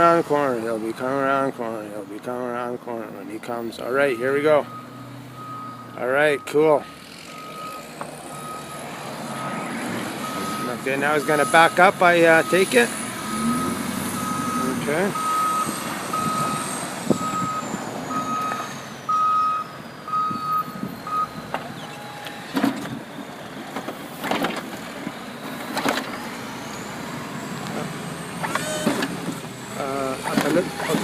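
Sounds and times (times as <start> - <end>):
truck engine running: 3.5 - 31.0
backup alarm beeping: 4.1 - 6.6, 7.3 - 9.6, 10.2 - 22.2.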